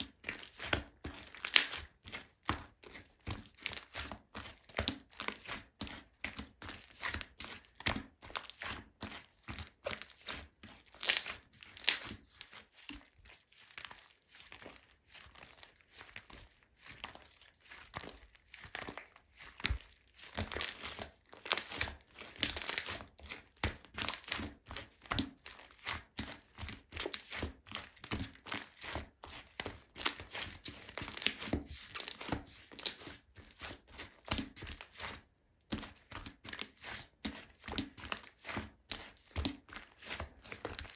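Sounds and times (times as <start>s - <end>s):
slime squishing: 0.0s - 40.9s
slime popping: 11.0s - 12.2s, 20.4s - 21.8s, 31.0s - 33.0s.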